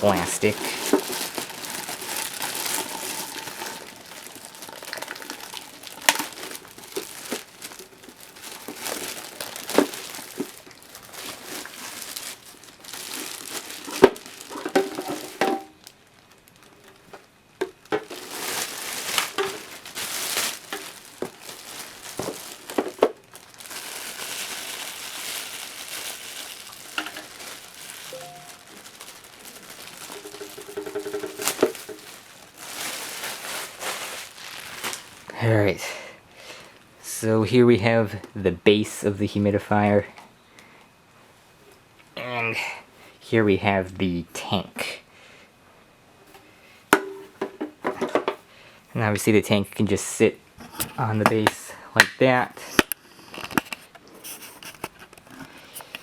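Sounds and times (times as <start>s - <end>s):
plastic wrapping crinkling: 0.0s - 35.5s, 52.7s - 56.0s.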